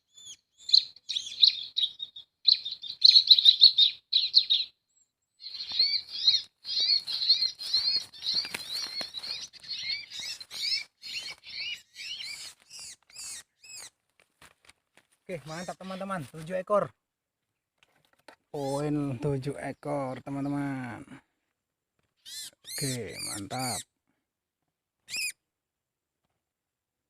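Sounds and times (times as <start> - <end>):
birds chirping: 0.0 - 14.0, 15.3 - 16.9, 18.5 - 21.1, 22.2 - 23.9
wings fluttering and rustling: 5.6 - 16.5.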